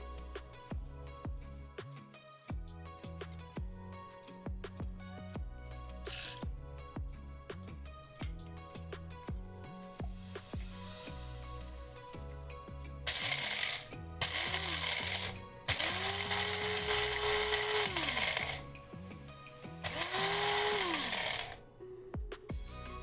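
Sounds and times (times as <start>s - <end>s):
background music: 0.0s - 23.0s
coffee beans rattling: 5.9s - 6.5s, 13.1s - 18.6s, 19.8s - 21.6s
coffee grinder motor whine: 6.0s - 6.5s, 13.1s - 18.7s, 19.8s - 21.6s.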